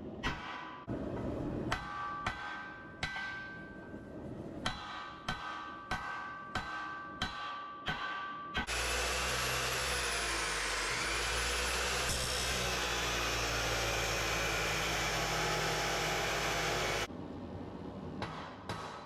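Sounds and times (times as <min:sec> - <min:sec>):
motor-driven machine whirring: 0:08.7 - 0:17.1.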